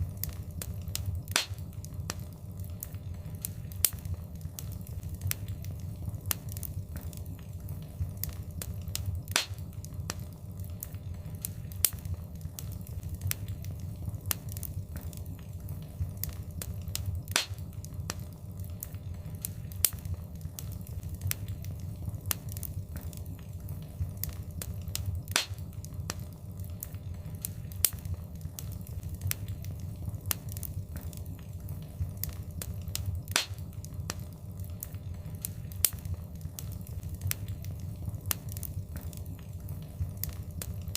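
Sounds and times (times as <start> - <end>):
fire crackling and popping: 0.0 - 40.9
low rumble of flames: 0.0 - 40.9.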